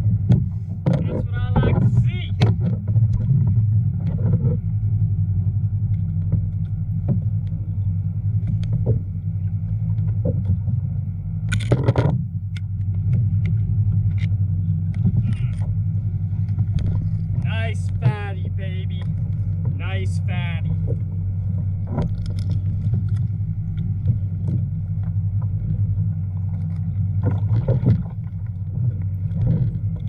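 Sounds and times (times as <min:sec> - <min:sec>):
motor humming: 0:12.6 - 0:30.0.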